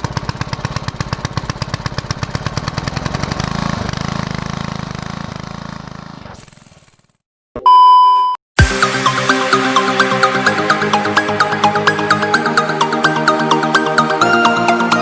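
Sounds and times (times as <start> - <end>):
machine engine running: 0.0 - 7.2
loud electronic beep: 7.6 - 8.4.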